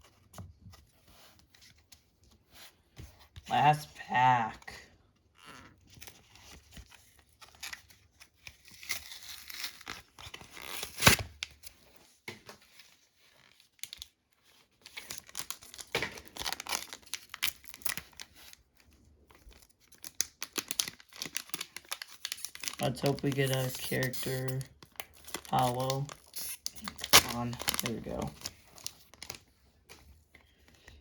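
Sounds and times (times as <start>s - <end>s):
wrapper ripping: 8.5s - 11.5s, 14.8s - 18.6s, 19.5s - 29.4s
cards crinkling: 12.7s - 31.0s
wrapper crinkling: 14.8s - 18.6s, 19.3s - 30.0s.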